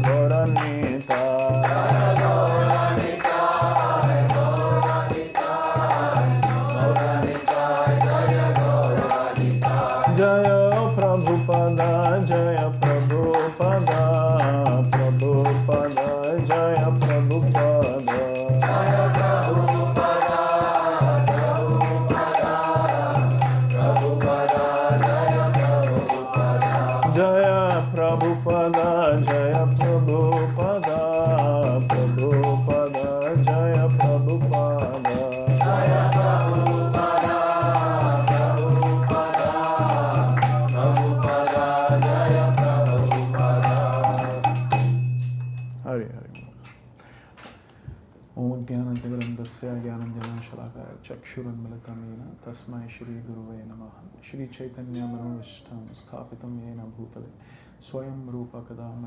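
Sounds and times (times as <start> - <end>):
voices singing a chanted melody: 0.0 - 45.1
hand cymbals clinking: 0.0 - 47.8.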